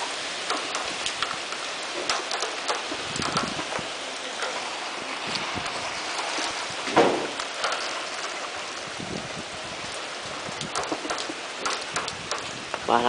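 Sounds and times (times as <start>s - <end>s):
heavy rain falling: 0.0s - 13.0s
raindrops ticking close: 0.0s - 13.0s
loud splat: 6.8s - 7.4s.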